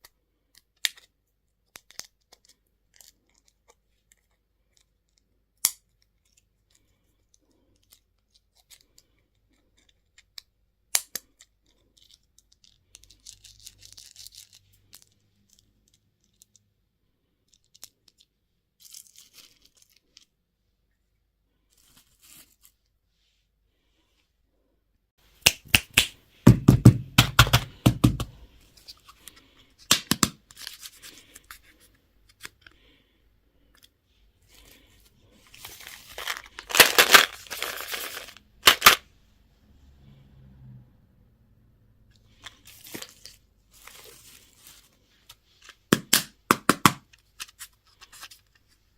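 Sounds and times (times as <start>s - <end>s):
plastic wrappers tearing and crinkling: 35.5s - 39.0s.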